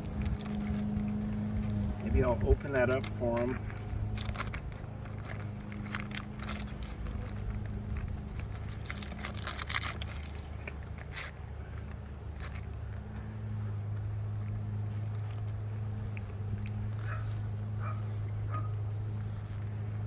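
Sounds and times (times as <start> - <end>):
wrapper crinkling and tearing: 0.0 - 13.6
steady low hum: 0.0 - 20.0.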